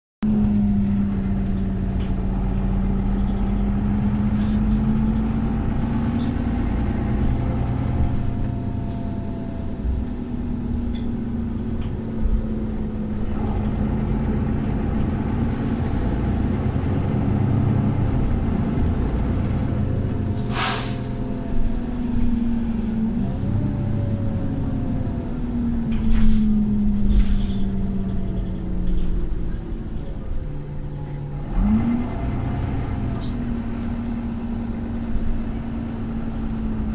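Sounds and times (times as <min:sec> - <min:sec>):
bus engine droning: 0:00.2 - 0:36.9
short sharp air hiss: 0:20.4 - 0:21.2.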